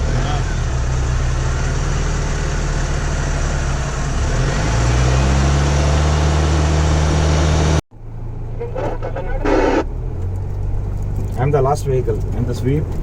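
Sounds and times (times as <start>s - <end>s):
engine idling: 8.0s - 11.1s.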